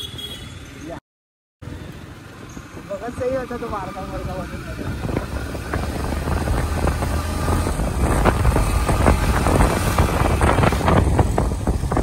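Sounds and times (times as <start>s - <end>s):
motorcycle engine and road rumble: 0.0s - 1.0s, 1.6s - 12.0s
wind buffeting microphone: 2.5s - 12.0s.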